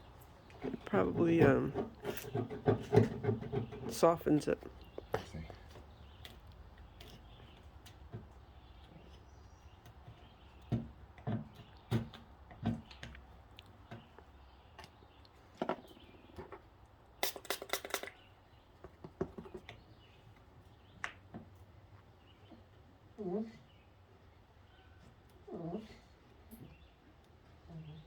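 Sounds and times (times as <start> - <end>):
hand tools knocking and clicking: 0.6 - 4.0.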